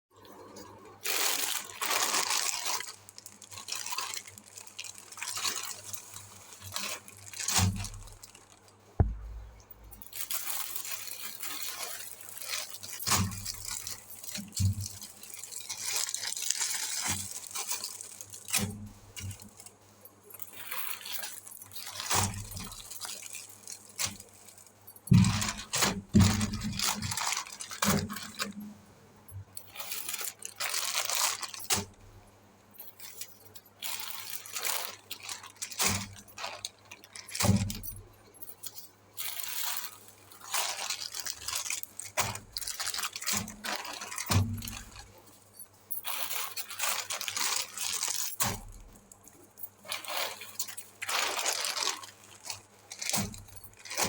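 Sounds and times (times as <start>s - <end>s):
hands rustling packaging: 0.3s - 28.7s, 29.5s - 32.1s, 32.7s - 54.0s.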